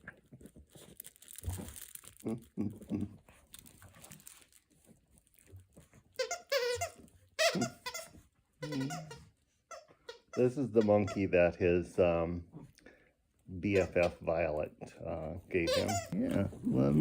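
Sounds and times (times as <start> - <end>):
plush toy crinkling: 0.0 - 9.2
toy squeaking: 6.2 - 11.5, 13.7 - 14.3, 15.6 - 16.3.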